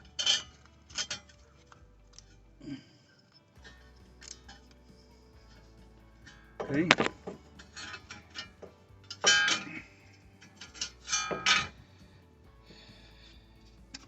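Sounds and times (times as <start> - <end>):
metal brake parts clinking: 3.6 - 12.1.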